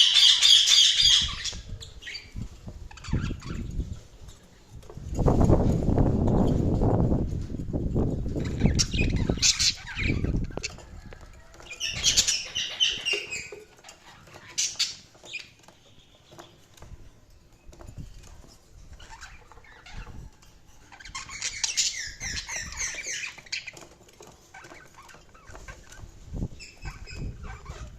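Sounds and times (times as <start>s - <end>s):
budgerigars chirping: 0.0s - 3.7s, 8.4s - 10.8s, 11.7s - 16.6s, 20.9s - 23.9s, 26.6s - 27.9s.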